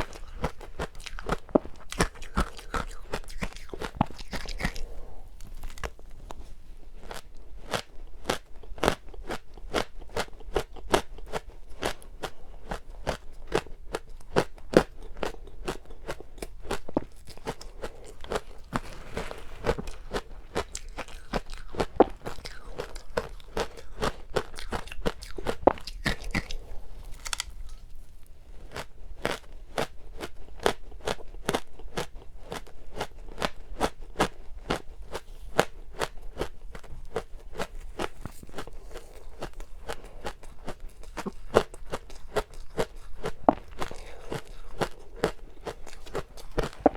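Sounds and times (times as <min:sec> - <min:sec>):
crunching frozen ice: 0:00.0 - 0:06.1, 0:14.4 - 0:27.8.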